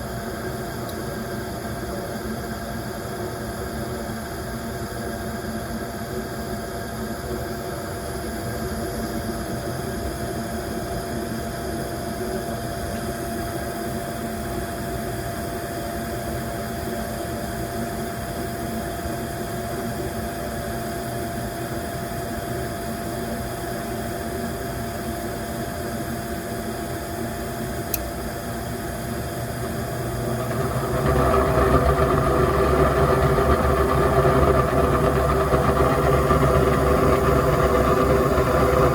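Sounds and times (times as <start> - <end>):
gas furnace motor hum: 26.6 - 38.9.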